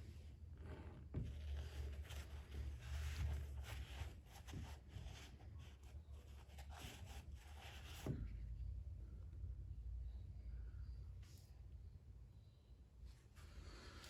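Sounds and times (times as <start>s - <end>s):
low steady hum: 7.4s - 14.0s.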